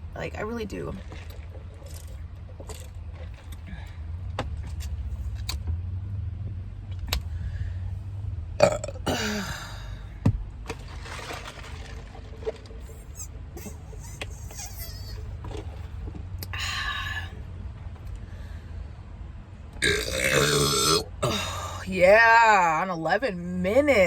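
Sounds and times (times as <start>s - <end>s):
woman burping: 8.6s - 9.8s, 19.8s - 21.8s.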